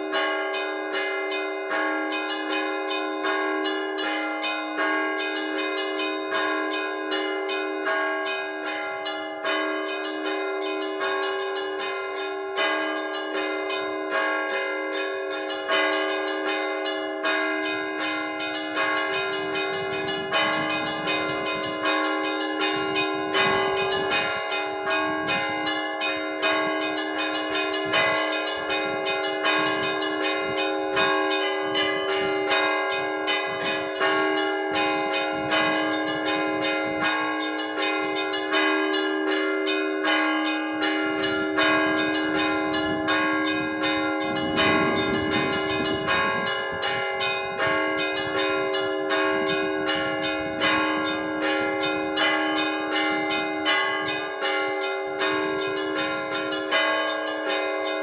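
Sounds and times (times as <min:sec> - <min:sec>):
large bells ringing: 0:00.0 - 0:58.0
small church bells struck: 0:00.0 - 0:58.0.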